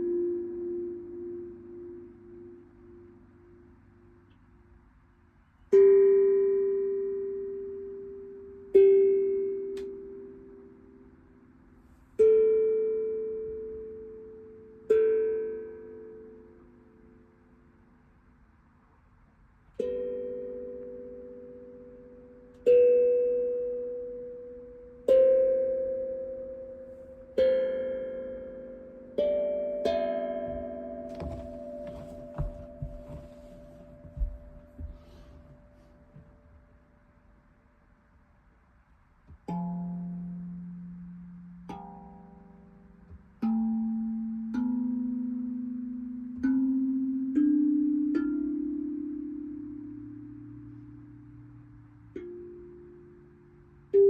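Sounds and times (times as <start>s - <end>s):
tongue drum and chime notes: 29.2s - 35.5s.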